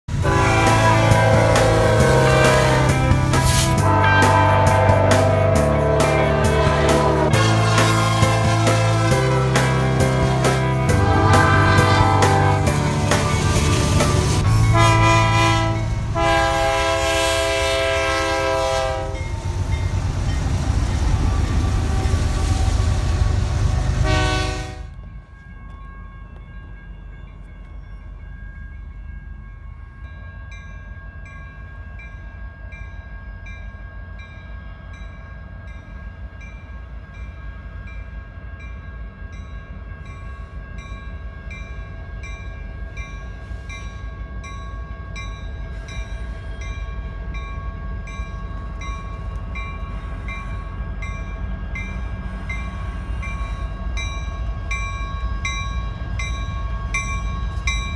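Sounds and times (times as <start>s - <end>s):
train rumbling: 0.0s - 57.9s
train horn chord: 0.1s - 19.4s, 21.7s - 25.0s
bell ringing: 0.8s - 15.0s.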